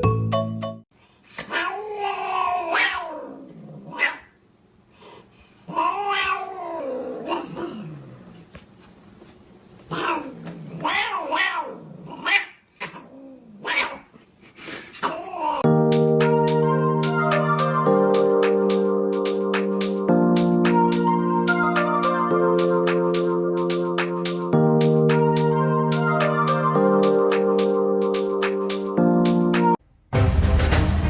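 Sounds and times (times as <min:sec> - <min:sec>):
cat yowling: 0:01.4 - 0:04.3, 0:05.7 - 0:07.9, 0:09.9 - 0:14.1.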